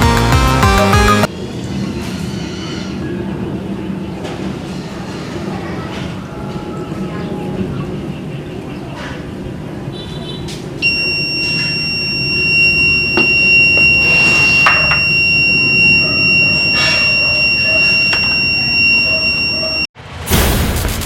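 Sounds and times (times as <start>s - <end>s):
high-pitched buzzer tone: 10.8s - 19.9s.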